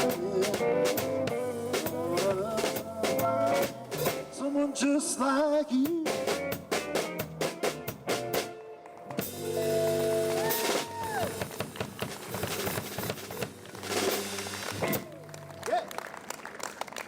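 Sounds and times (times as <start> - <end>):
drum hits: 0.0 - 4.4, 5.9 - 8.5, 9.2 - 15.2
live band playing: 0.0 - 15.7.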